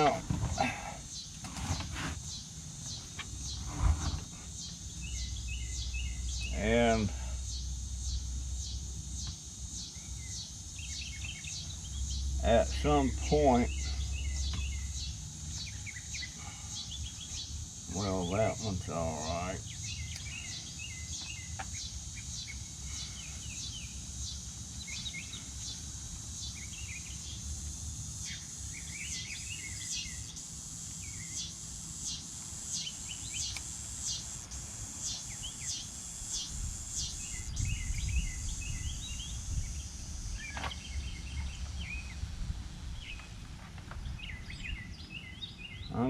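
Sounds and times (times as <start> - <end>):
high insect drone: 0.0 - 46.0
small birds chirping: 0.0 - 46.0
wind rumbling on microphone: 36.5 - 44.9.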